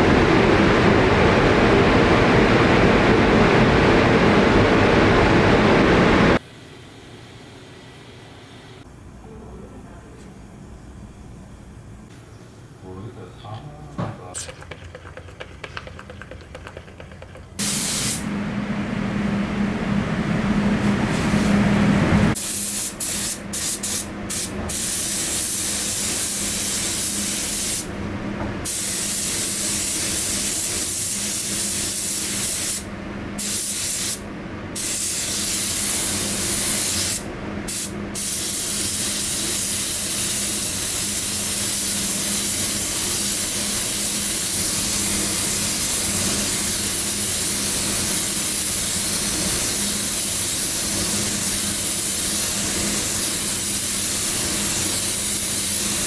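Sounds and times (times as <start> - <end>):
compressed air hissing: 14.3 - 18.3, 34.8 - 56.0.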